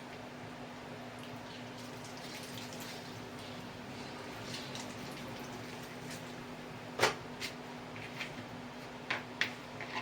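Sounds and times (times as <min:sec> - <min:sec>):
water squelching and dripping: 0:01.2 - 0:06.4.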